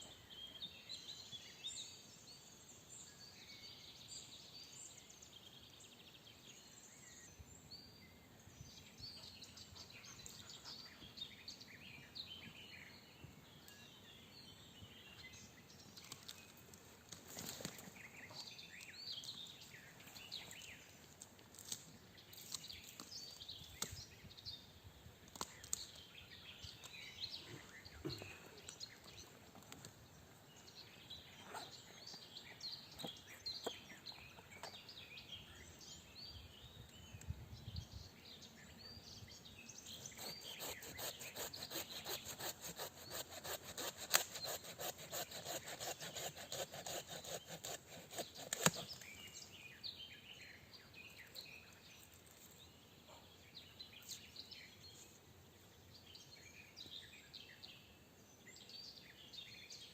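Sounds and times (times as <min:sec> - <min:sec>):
small birds chirping: 0:00.0 - 0:59.9
hand saw cutting wood: 0:40.0 - 0:49.0.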